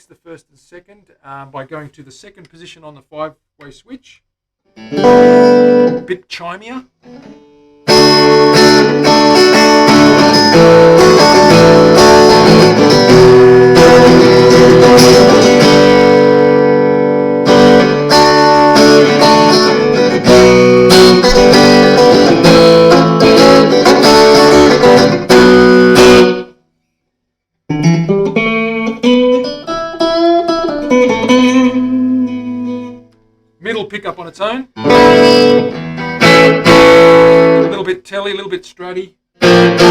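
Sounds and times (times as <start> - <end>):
clean electric guitar: 4.7 - 6.1, 7.0 - 26.6, 27.7 - 33.6, 34.7 - 37.9, 39.4 - 39.9.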